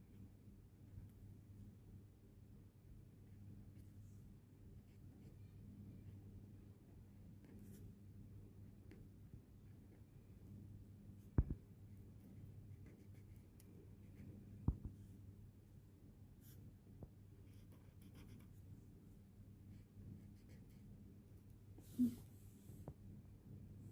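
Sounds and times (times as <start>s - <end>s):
low steady hum: 0.0s - 23.9s
pencil scratching on paper: 17.5s - 18.6s, 19.7s - 20.8s.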